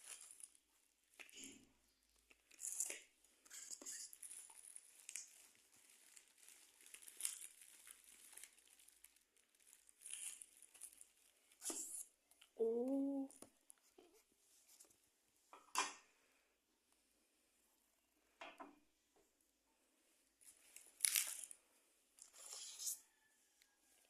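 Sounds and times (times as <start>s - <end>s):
packaging crinkling and tearing: 0.0s - 0.6s, 2.3s - 12.0s, 20.6s - 21.6s.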